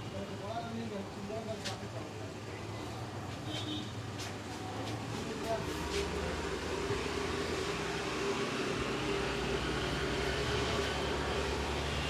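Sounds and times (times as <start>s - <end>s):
vehicle engine hum: 4.8s - 12.0s.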